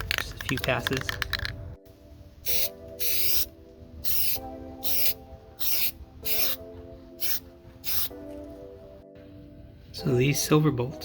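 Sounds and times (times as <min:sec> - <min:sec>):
background music: 0:00.0 - 0:11.0
aerosol can spraying: 0:02.5 - 0:06.6, 0:07.2 - 0:08.2.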